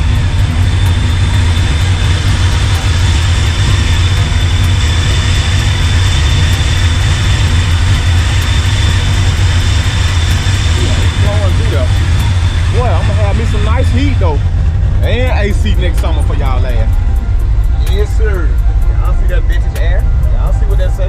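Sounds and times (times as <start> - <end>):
heater blower rushing air: 0.0 - 17.0
engine idling hum: 0.0 - 21.0.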